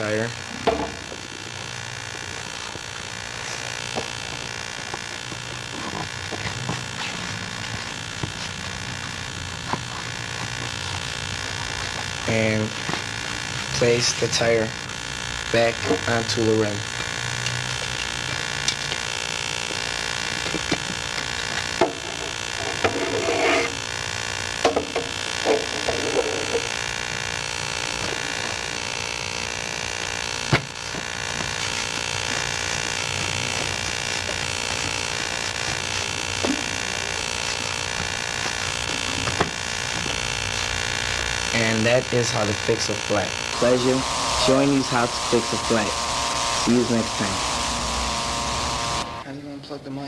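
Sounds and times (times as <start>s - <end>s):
steady hum and hiss: 0.0s - 50.0s
bicycle tire rubbing rustle: 22.9s - 23.8s, 30.8s - 43.0s.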